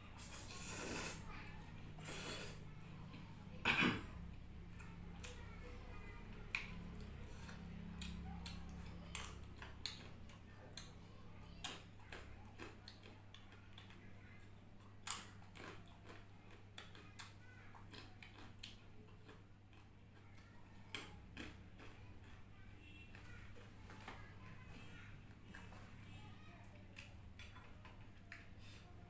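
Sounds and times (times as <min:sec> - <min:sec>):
chewing: 0:06.3 - 0:26.0, 0:26.6 - 0:29.0.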